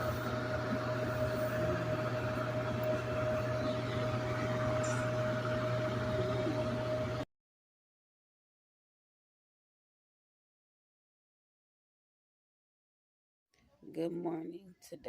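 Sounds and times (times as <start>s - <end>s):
mechanical hum: 0.0s - 7.3s.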